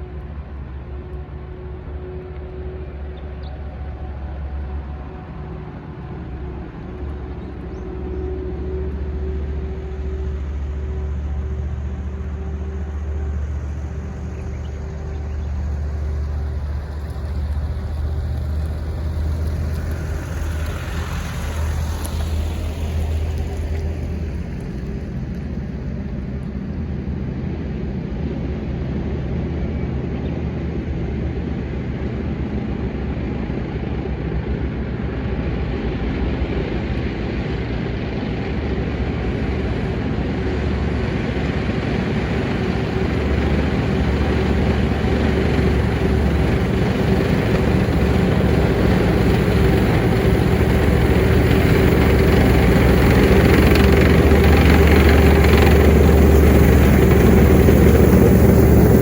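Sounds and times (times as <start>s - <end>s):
tank engine droning: 0.0s - 59.0s
tank running-gear noise: 38.2s - 59.0s.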